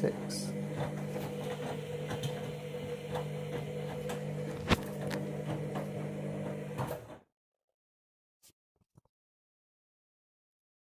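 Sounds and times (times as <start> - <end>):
washing machine motor humming: 0.0 - 7.2.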